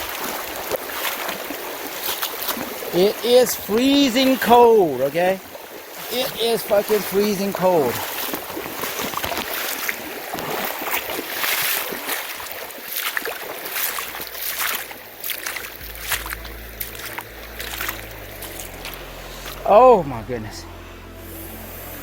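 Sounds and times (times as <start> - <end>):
feet wading through water: 0.0 - 20.4
stream flowing water: 0.0 - 22.0
low steady rumble: 14.1 - 22.0.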